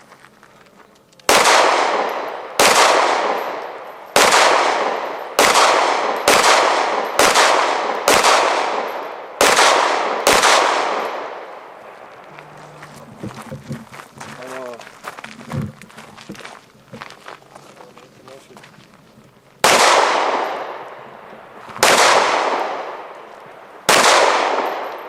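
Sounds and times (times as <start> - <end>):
pistol shots with echo: 1.3 - 12.1, 19.6 - 25.0.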